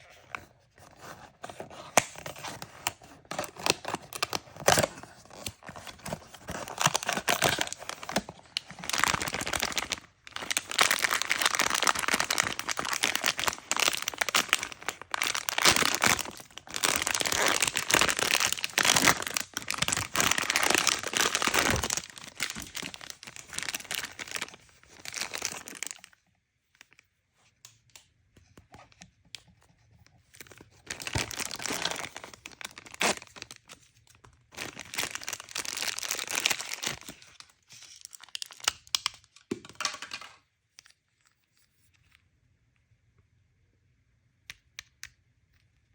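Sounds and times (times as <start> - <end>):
packaging crinkling and tearing: 1.0 - 26.2, 30.3 - 40.4.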